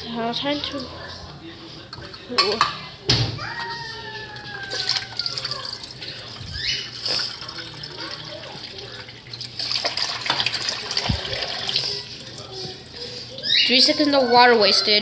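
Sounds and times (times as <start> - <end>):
tap running into a sink: 9.8 - 11.7.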